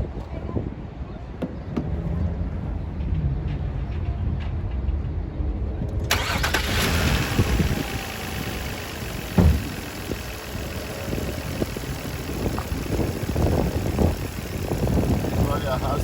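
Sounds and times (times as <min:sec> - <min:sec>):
car engine idling rough: 0:06.1 - 0:16.0
thump: 0:09.3 - 0:09.8.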